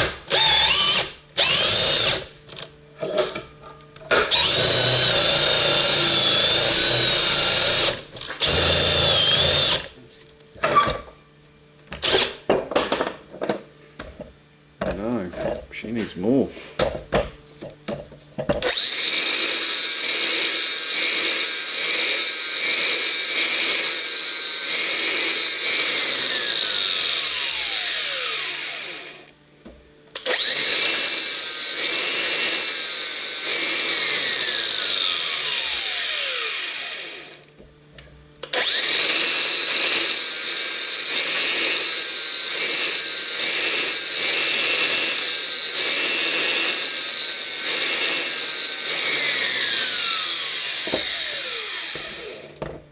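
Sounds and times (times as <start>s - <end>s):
angle grinder grinding steel: 18.6s - 29.3s, 38.4s - 52.6s.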